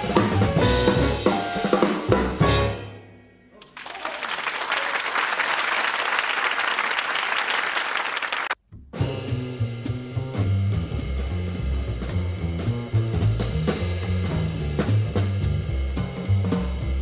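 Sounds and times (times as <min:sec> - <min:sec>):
drum kit with cymbal hits: 0:00.0 - 0:03.0, 0:08.8 - 0:17.0
jazz piano: 0:00.0 - 0:03.1, 0:08.9 - 0:17.0
audience applause: 0:03.6 - 0:08.6
stepping low bass line: 0:08.7 - 0:17.0.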